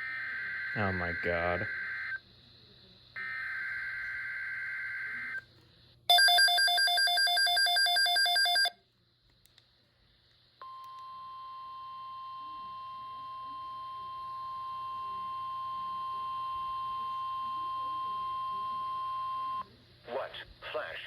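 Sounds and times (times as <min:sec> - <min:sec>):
steady warning alarm tone: 0:00.0 - 0:02.1, 0:06.1 - 0:08.7
rapidly pulsing electronic alarm: 0:00.0 - 0:02.2, 0:06.1 - 0:08.7.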